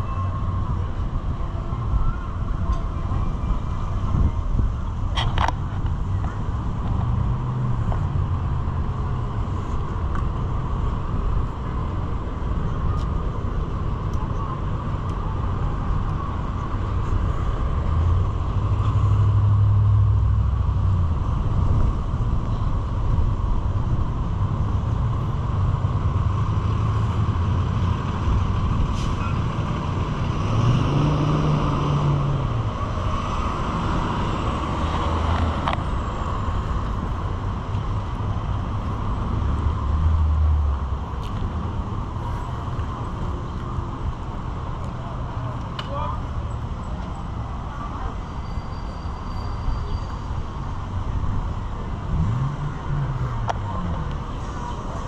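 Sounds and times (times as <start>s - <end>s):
vehicles driving past: 0.0s - 55.0s.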